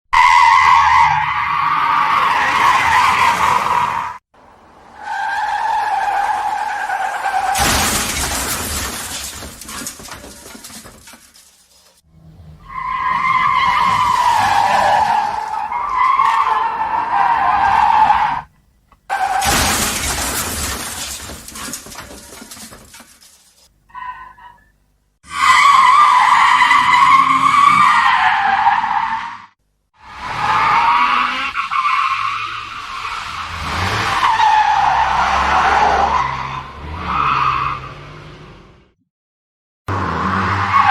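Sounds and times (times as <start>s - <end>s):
car tyres screeching: 0.2s - 18.5s, 19.1s - 23.1s, 23.8s - 38.5s, 39.9s - 40.9s
loud car crash: 5.0s - 11.2s, 19.1s - 23.2s.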